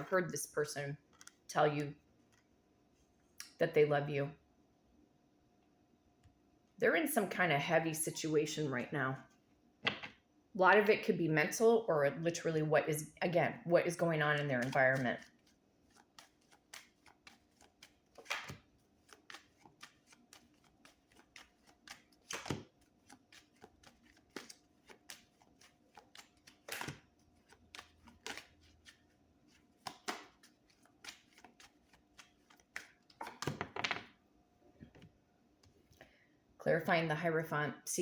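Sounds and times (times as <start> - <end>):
cards being shuffled: 14.6 - 34.0.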